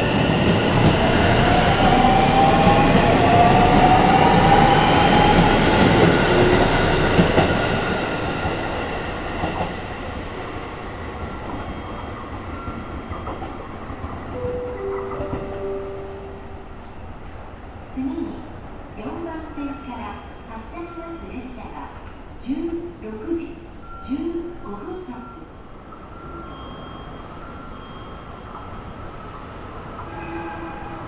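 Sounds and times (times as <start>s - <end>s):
electric train inverter whine: 0.0s - 12.9s.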